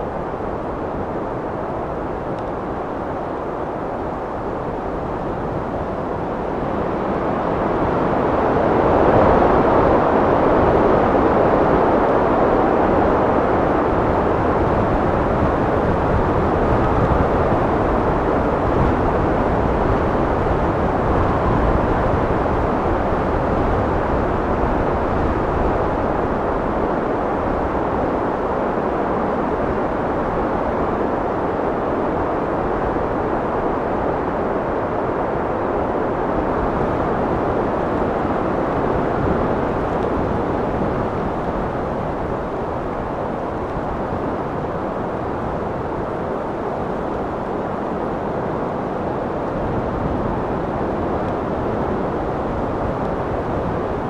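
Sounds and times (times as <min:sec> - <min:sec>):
wind blowing: 0:32.5 - 0:54.0.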